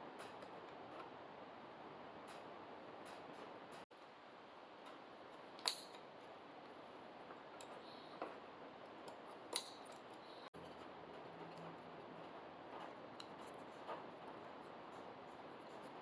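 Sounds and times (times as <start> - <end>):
hand tool snips and clicks: 9.1 - 10.2.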